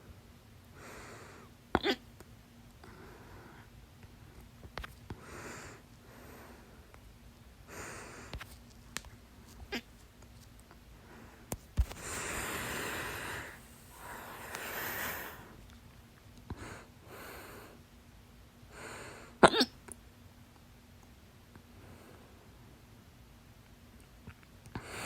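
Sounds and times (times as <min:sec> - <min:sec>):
soft breaths: 0:00.6 - 0:01.6, 0:02.7 - 0:08.7, 0:09.3 - 0:15.8, 0:16.4 - 0:17.9, 0:21.6 - 0:22.8, 0:24.7 - 0:25.0
woman hiccupping: 0:01.8 - 0:02.0, 0:19.4 - 0:19.8.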